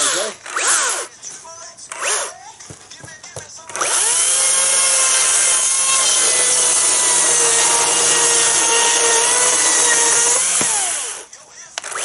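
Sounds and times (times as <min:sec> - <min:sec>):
electric motor whine: 0:03.7 - 0:12.0.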